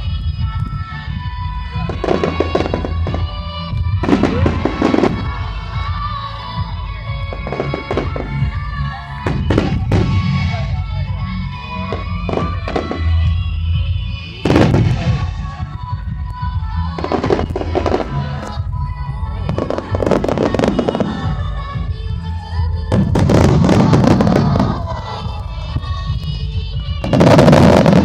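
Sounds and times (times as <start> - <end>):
fireworks bursting with crackling: 0.0 - 28.0
music playing: 0.0 - 28.0.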